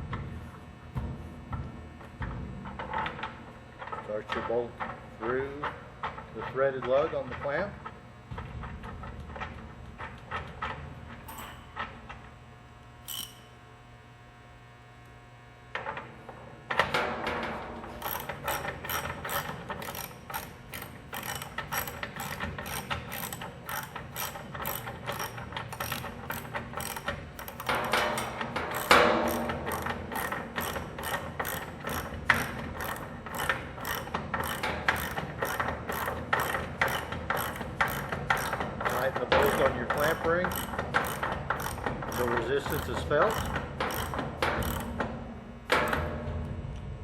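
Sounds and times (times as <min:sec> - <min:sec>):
ratchet wrench clicking: 0:13.1 - 0:13.5, 0:18.0 - 0:44.9.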